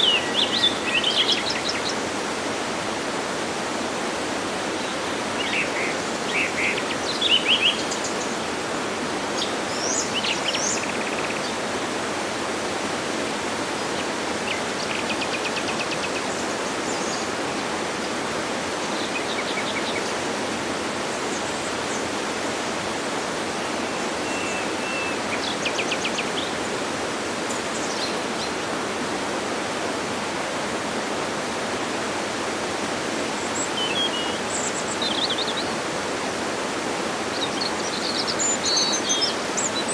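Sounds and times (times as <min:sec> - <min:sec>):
waterfall rushing: 0:00.0 - 0:39.9
birds chirping: 0:23.6 - 0:26.8.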